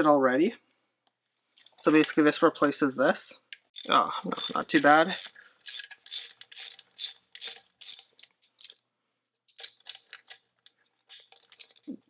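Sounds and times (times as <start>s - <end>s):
ratchet wrench clicking: 3.8s - 8.1s.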